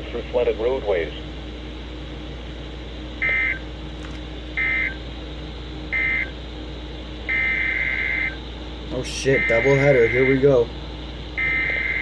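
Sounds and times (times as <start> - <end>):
buzzy two-tone data bursts: 9.1 - 10.6.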